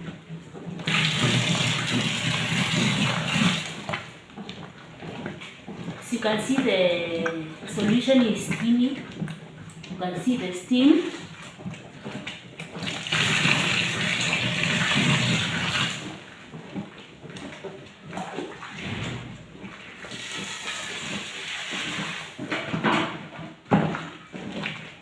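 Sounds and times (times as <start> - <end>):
liquid sloshing: 0.0 - 25.0
water pouring into bucket: 0.7 - 4.4, 11.0 - 16.5, 18.1 - 22.5.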